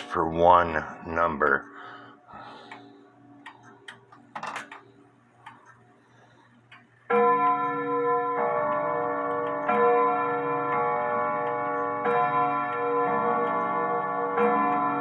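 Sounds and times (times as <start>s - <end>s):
clock ticking: 6.7s - 15.0s
clock striking bell tones: 7.1s - 15.0s.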